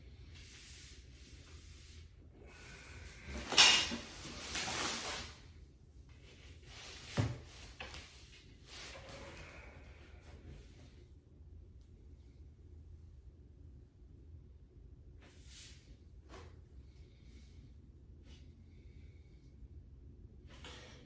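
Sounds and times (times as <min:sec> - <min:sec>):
furniture parts scraping and rustling: 0:03.2 - 0:05.4.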